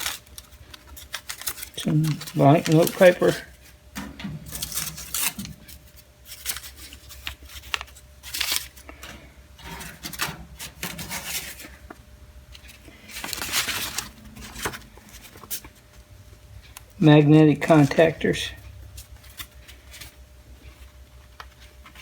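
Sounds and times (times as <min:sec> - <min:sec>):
paper rustling: 0:00.0 - 0:16.0.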